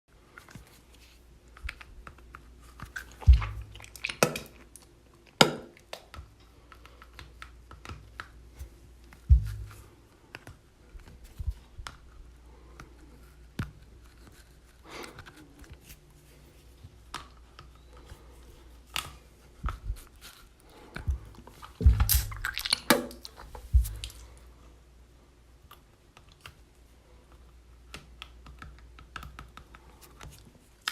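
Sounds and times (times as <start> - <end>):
wet mouth sounds: 3.0 - 4.6, 21.1 - 24.3.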